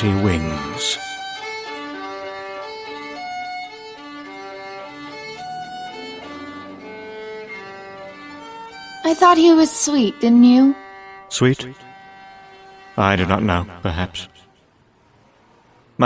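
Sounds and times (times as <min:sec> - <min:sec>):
violin playing slow melody: 0:00.0 - 0:13.7.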